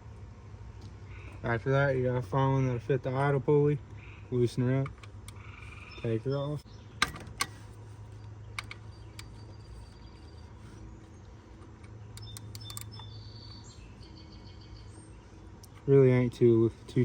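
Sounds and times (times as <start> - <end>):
low steady hum: 0.0 - 17.0
socket ratchet clicking: 11.6 - 13.6.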